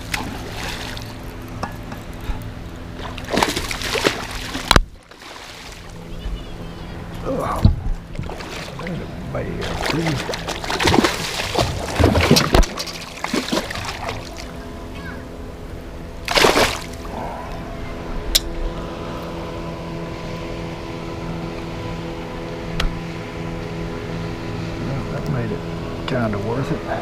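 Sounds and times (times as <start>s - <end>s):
multi-tone hum: 0.0s - 27.0s
fish splashing at surface: 3.0s - 5.8s, 9.6s - 14.4s, 16.3s - 17.0s.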